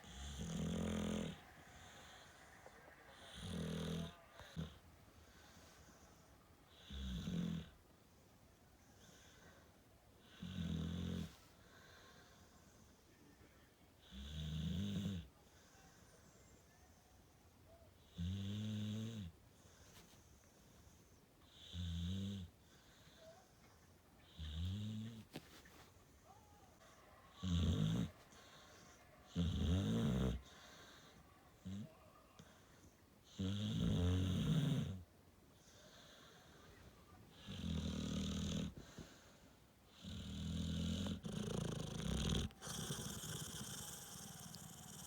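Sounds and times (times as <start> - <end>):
dog snoring: 0.0 - 4.8, 6.7 - 7.8, 10.2 - 11.5, 14.0 - 15.3, 18.0 - 19.3, 21.4 - 22.5, 24.2 - 25.4, 27.3 - 31.9, 33.2 - 35.0, 37.3 - 39.2, 39.9 - 45.0.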